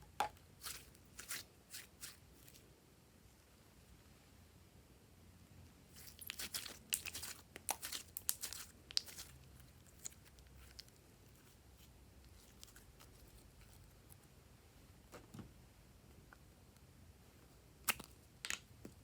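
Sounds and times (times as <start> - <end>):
slime crackling and crinkling: 0.6 - 2.6, 5.9 - 14.2.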